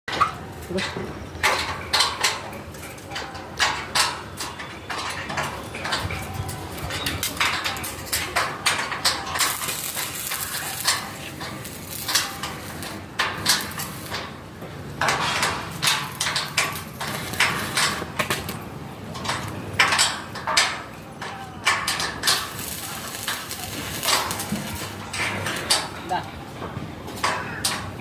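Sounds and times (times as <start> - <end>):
metallic clanking and knocking: 10.9 - 22.7.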